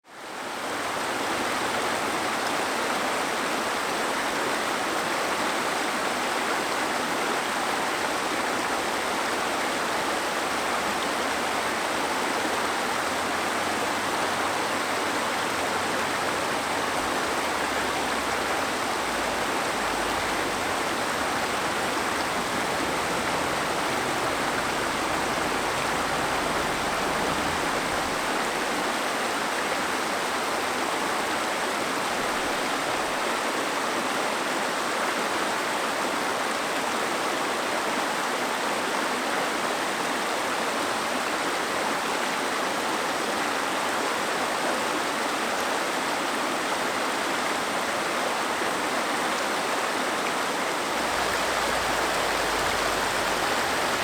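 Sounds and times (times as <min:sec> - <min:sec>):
water rushing over rocks: 0:00.6 - 0:33.8, 0:46.8 - 0:54.0.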